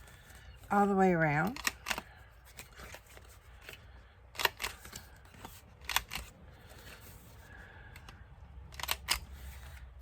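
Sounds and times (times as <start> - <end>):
card stock being handled: 2.0 - 7.5.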